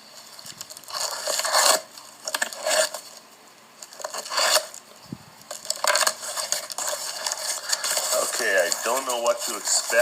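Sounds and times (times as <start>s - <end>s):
cardboard box scraping: 0.9s - 3.1s, 4.0s - 4.8s.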